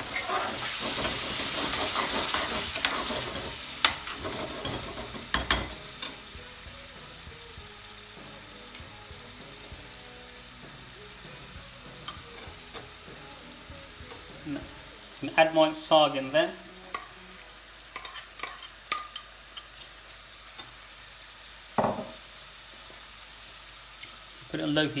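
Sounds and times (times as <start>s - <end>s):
chicken sizzling in a pan: 0.0s - 25.0s.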